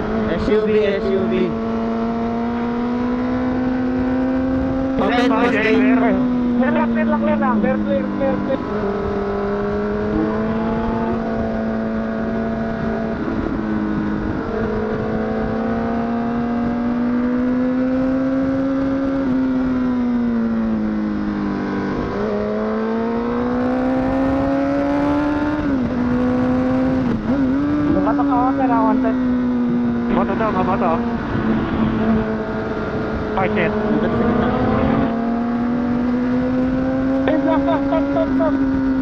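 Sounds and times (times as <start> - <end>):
motorcycle engine revving: 0.0 - 39.0
rush of wind: 0.0 - 39.0.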